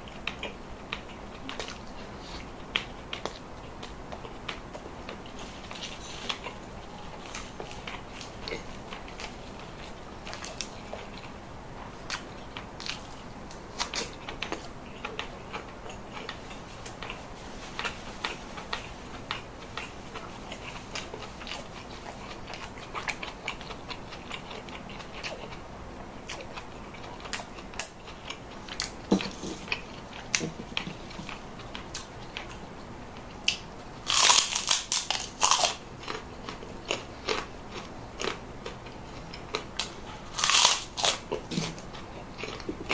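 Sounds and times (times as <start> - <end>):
person chewing: 0.1 - 11.4, 12.1 - 25.6, 26.2 - 32.6, 33.4 - 42.9
crisp crunching: 34.1 - 36.2, 40.4 - 41.7.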